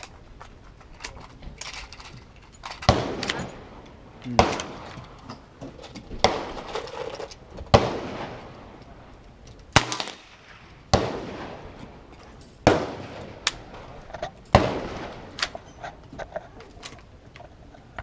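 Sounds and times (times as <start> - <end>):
faint gunshots: 2.9 - 3.5, 4.3 - 4.9, 7.7 - 8.5, 9.8 - 11.8, 12.6 - 15.4
loud gunshots with echo: 7.7 - 8.5, 9.8 - 11.8, 12.6 - 13.9, 14.5 - 15.4.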